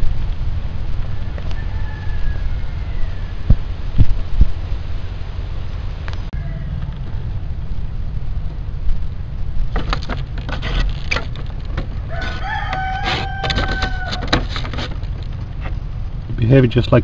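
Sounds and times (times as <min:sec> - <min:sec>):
low rumble: 0:00.0 - 0:16.8
rooster crowing: 0:01.0 - 0:03.6, 0:06.4 - 0:07.4, 0:11.8 - 0:14.8.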